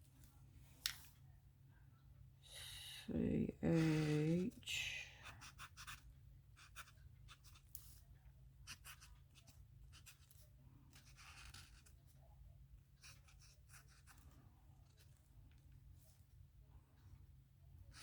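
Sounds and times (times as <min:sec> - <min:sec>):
pen scratching on paper: 0:03.7 - 0:04.2, 0:05.3 - 0:08.0, 0:08.6 - 0:12.0, 0:13.0 - 0:15.0.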